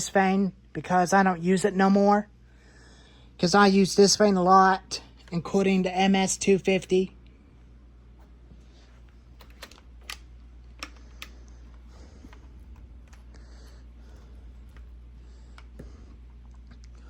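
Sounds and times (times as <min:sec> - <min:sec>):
low hum: 0:06.9 - 0:17.0.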